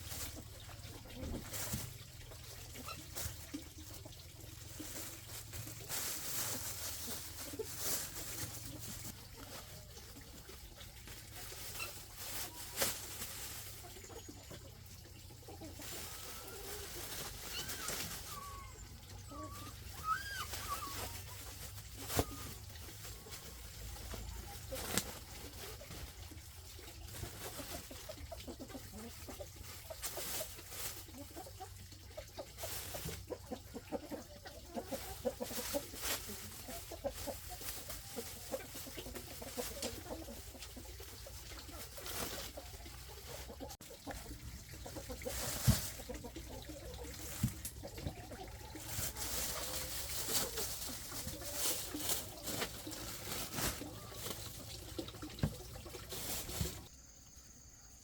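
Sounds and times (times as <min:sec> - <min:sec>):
poultry calling: 0:15.6 - 0:23.4.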